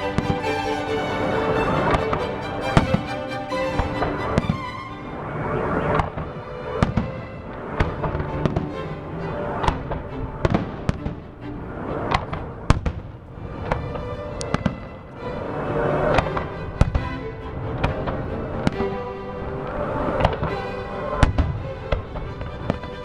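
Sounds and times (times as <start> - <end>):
music playing: 0.0 - 11.7.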